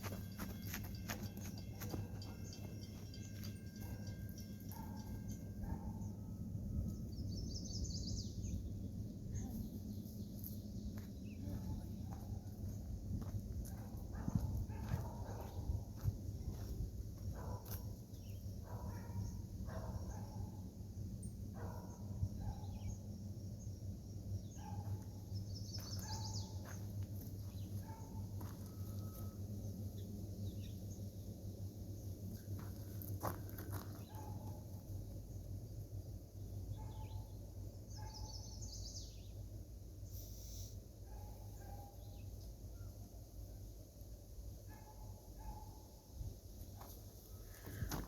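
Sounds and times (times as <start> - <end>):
steady low rumble: 0.0 - 36.7
steady low hum: 0.0 - 48.0
birds twittering: 21.6 - 29.3, 36.7 - 39.4.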